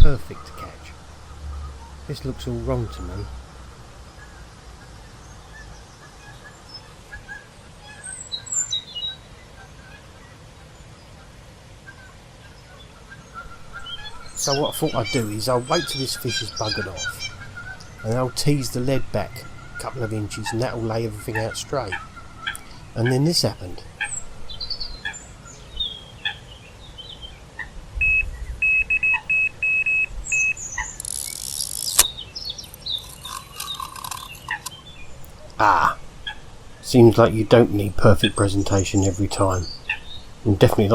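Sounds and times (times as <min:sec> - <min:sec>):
songbirds chirping: 0:00.0 - 0:40.9
electronic bite alarm beeping: 0:28.0 - 0:32.1
sharp click: 0:30.8 - 0:35.5.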